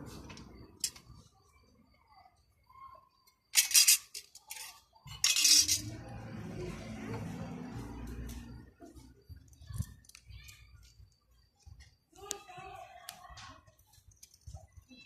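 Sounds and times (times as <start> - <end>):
metal parts clinking: 3.5 - 6.0.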